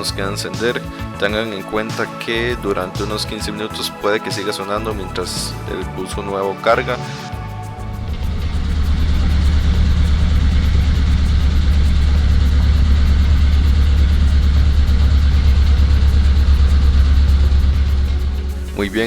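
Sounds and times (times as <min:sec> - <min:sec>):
car engine running with ticking: 0:07.7 - 0:18.8.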